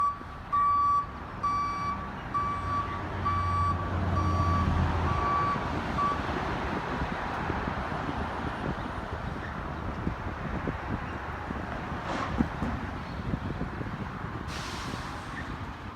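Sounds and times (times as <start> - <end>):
backup alarm beeping: 0.0 - 6.2.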